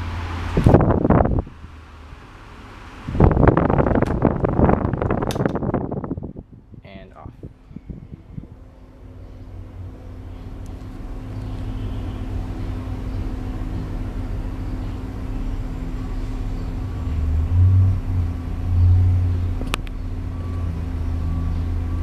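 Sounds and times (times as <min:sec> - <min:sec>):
rushing air: 0:00.0 - 0:11.4
wind buffeting microphone: 0:00.5 - 0:01.6, 0:03.0 - 0:08.6.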